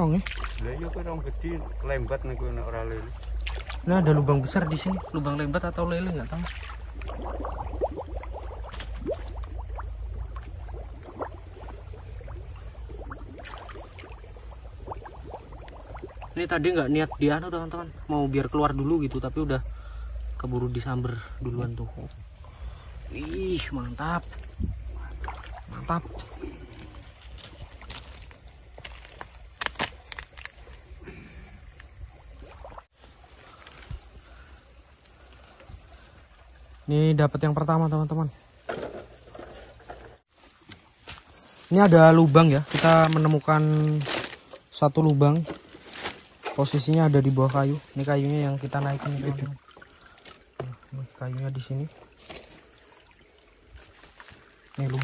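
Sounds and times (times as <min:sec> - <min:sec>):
water bubbling in mud: 0:00.0 - 0:18.1, 0:22.2 - 0:28.0
crickets droning: 0:00.0 - 0:55.0.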